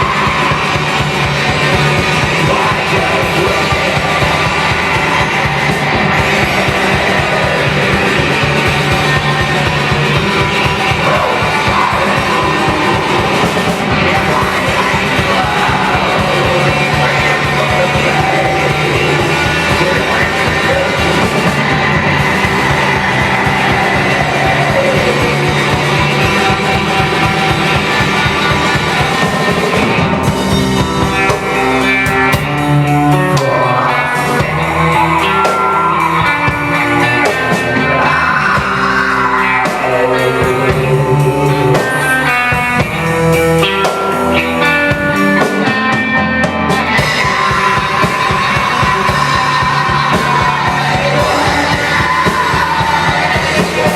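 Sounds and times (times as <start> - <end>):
rock band music: 0.0 - 53.9.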